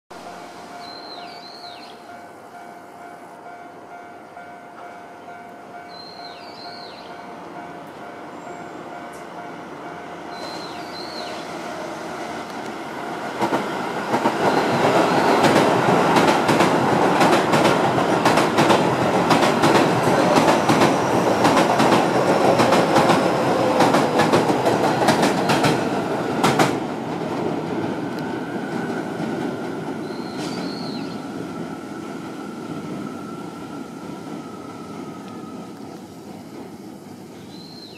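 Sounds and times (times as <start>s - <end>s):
train wheels clacking over rail joints: 13.4s - 26.8s.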